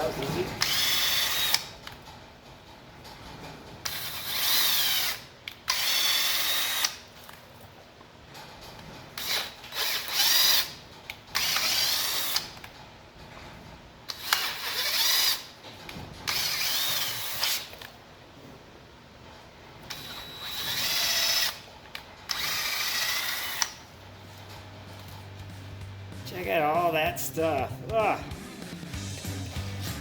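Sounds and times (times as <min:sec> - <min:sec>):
drill motor whine: 0:00.6 - 0:01.7, 0:03.8 - 0:07.0, 0:11.4 - 0:12.5, 0:14.1 - 0:15.5, 0:16.3 - 0:17.8, 0:19.9 - 0:21.6, 0:22.3 - 0:23.8.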